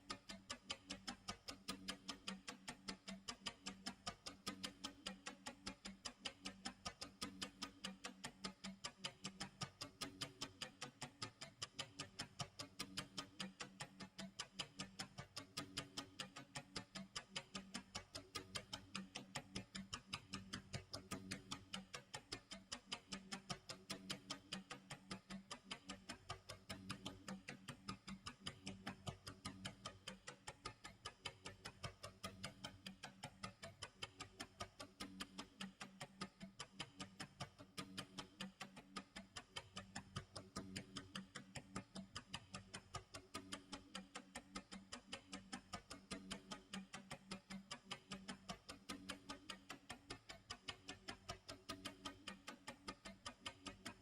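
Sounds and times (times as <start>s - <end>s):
clock ticking: 0.0s - 54.0s.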